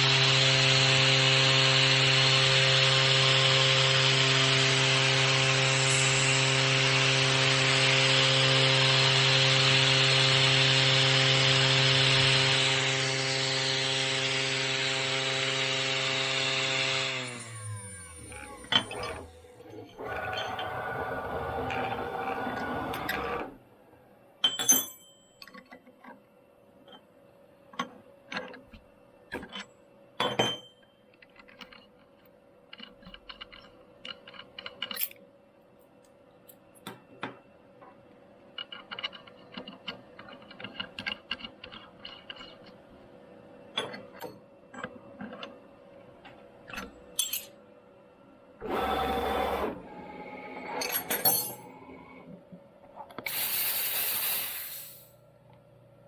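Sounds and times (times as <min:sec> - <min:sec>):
short hissing burst: 0:53.3 - 0:55.2
faint machine hum: 0:54.9 - 0:56.0.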